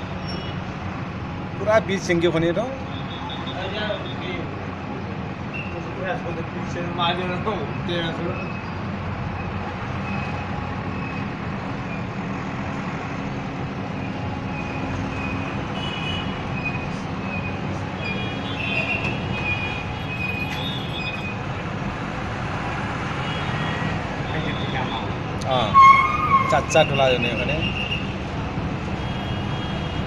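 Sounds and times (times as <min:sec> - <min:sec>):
heavy diesel engine running: 0:19.0 - 0:21.7.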